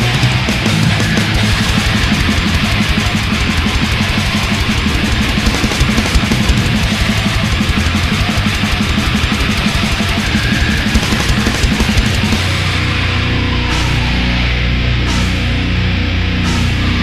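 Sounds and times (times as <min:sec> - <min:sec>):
very fast drumming: 0:00.0 - 0:12.9
distorted electric guitars: 0:00.0 - 0:17.0.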